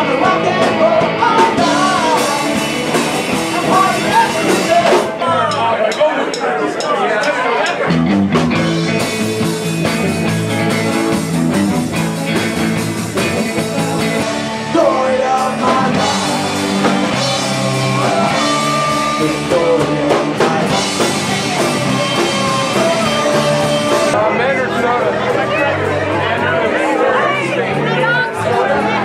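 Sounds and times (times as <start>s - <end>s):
electric guitar: 0.0s - 5.5s, 7.8s - 29.0s
person singing: 0.0s - 6.0s, 13.1s - 25.8s
drum kit: 0.0s - 26.9s.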